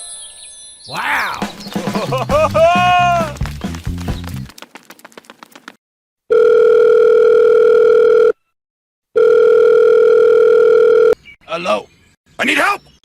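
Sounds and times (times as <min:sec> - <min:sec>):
telephone ringing tone: 0:06.3 - 0:08.5, 0:09.2 - 0:11.2.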